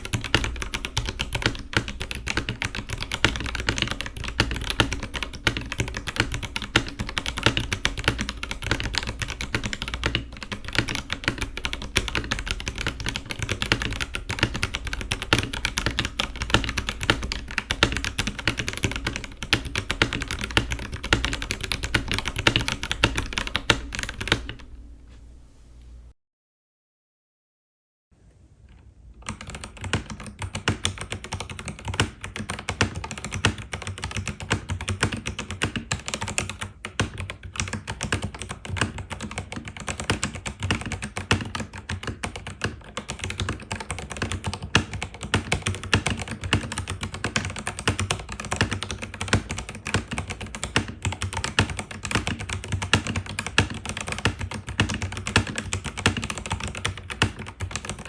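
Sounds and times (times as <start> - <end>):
fast typing on mechanical keyboard: 0.0 - 25.0, 29.2 - 58.0.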